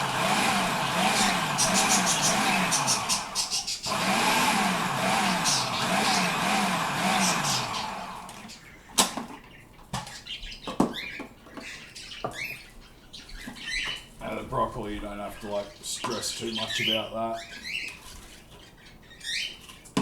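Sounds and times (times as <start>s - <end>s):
food processor motor chopping: 0.0s - 8.6s.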